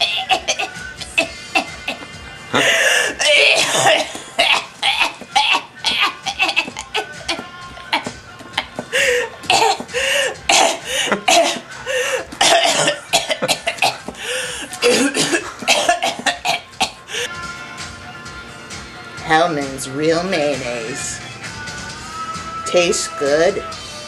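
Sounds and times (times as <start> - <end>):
person coughing: 0.0 - 17.3.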